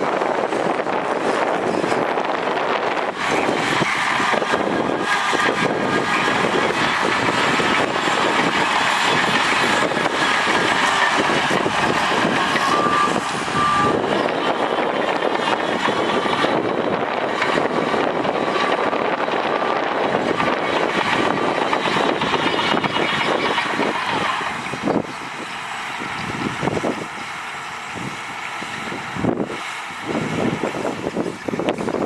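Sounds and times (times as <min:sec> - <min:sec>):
heavy diesel machinery working: 0:00.0 - 0:32.0
short high beeps: 0:12.6 - 0:14.0.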